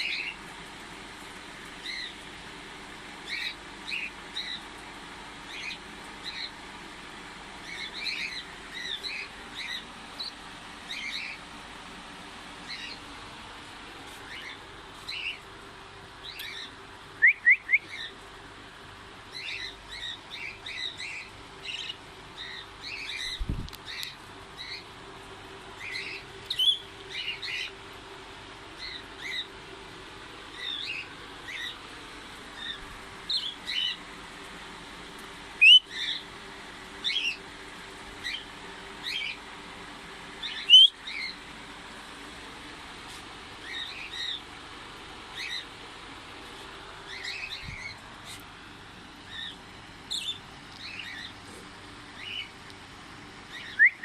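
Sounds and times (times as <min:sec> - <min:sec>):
small parrots chirping: 0:03.3 - 0:04.6, 0:07.6 - 0:11.4, 0:12.6 - 0:13.0, 0:14.3 - 0:15.4, 0:19.3 - 0:24.9, 0:25.8 - 0:27.7, 0:28.8 - 0:29.5, 0:30.6 - 0:31.8, 0:32.6 - 0:34.0, 0:35.6 - 0:36.3, 0:37.0 - 0:37.4, 0:38.2 - 0:39.4, 0:40.4 - 0:41.4, 0:43.6 - 0:44.4, 0:45.3 - 0:45.7, 0:47.1 - 0:48.0, 0:49.3 - 0:51.4, 0:52.2 - 0:52.5, 0:53.5 - 0:54.0
loud sharp bird calls: 0:35.6 - 0:36.3, 0:40.4 - 0:41.4, 0:47.0 - 0:48.0, 0:53.5 - 0:54.0.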